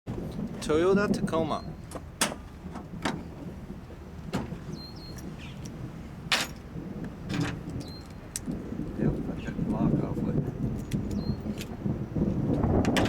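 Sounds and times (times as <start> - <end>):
low steady rumble: 0.1 - 13.0
metal clicks and knocks: 1.9 - 3.2, 5.2 - 8.6
tailgate clunk: 1.9 - 3.3, 4.2 - 4.7, 6.3 - 6.7, 7.3 - 7.6.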